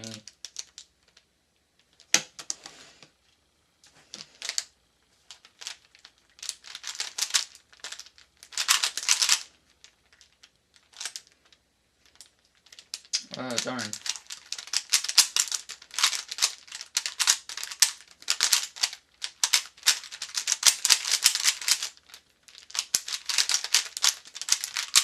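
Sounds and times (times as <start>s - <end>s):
plastic puzzle cube clicking: 6.4s - 9.5s, 12.1s - 25.0s.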